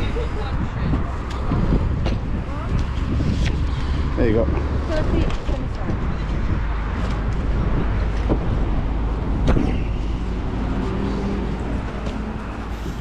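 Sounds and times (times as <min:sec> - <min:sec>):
strong wind buffeting microphone: 0:00.0 - 0:13.0.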